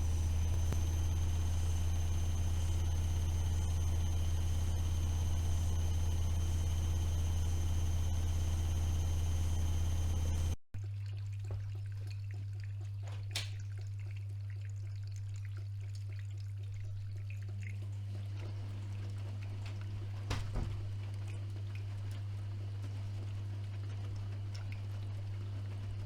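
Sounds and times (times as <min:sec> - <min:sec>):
washing machine humming: 0:00.0 - 0:10.6, 0:15.8 - 0:26.0
water trickling and splashing: 0:10.8 - 0:25.9
washing machine knocks: 0:20.2 - 0:21.0.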